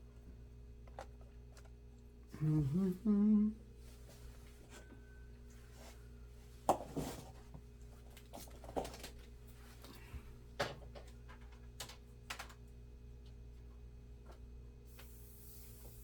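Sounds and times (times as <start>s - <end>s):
steady low hum: 0.0s - 8.2s.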